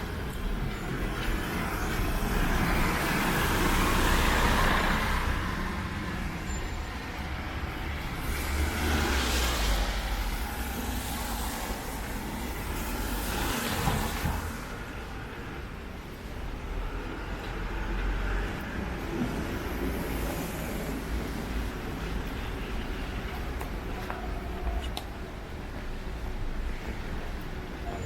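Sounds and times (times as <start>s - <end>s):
vehicles passing on wet road: 0.0s - 27.8s
heavy rain: 7.4s - 17.0s.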